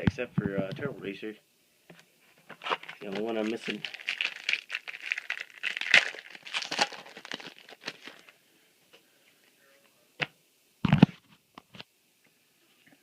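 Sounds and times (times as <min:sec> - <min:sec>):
foil pack crinkling and tearing: 0:02.6 - 0:08.4.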